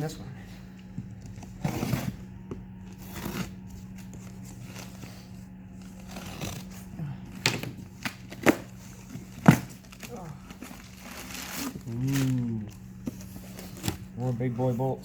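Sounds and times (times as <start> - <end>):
steady low hum: 0.0 - 15.0
cardboard box rustling: 8.2 - 14.9.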